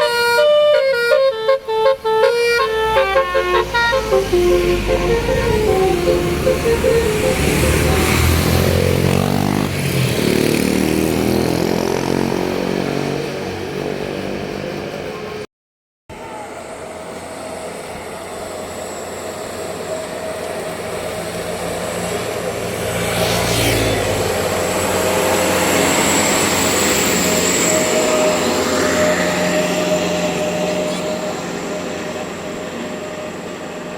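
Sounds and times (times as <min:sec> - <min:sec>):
bus horn playing tune: 0:00.0 - 0:08.7
vehicle passing: 0:02.8 - 0:14.9, 0:21.1 - 0:33.9
vehicle engine running: 0:03.8 - 0:09.5.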